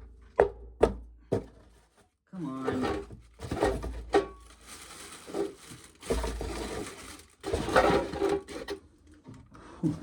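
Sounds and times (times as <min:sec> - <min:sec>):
dry crinkly rustle: 0:04.3 - 0:08.3.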